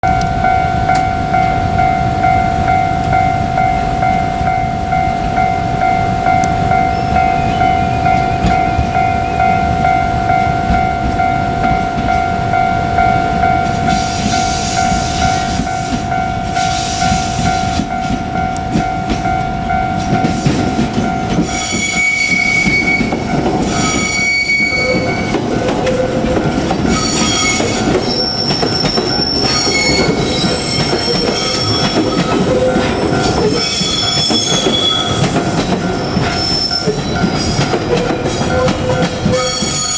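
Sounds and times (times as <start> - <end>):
electric train rumbling past: 0.0 - 39.9
level crossing bell ringing: 0.0 - 39.9
train wheels squealing: 13.9 - 16.0, 21.4 - 39.9.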